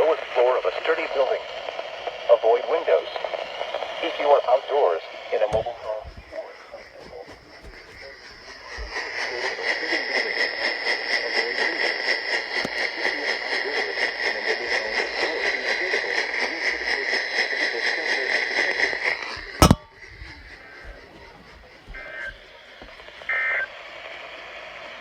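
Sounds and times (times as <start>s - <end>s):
radio static hiss: 0.0s - 19.9s, 20.5s - 25.0s
loud click: 19.6s - 19.8s.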